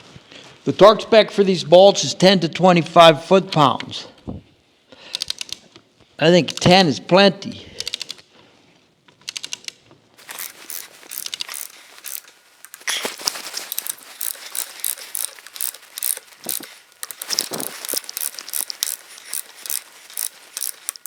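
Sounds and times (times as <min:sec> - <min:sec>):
ratchet wrench clicking: 0:05.1 - 0:05.6, 0:07.8 - 0:08.2, 0:09.2 - 0:21.0.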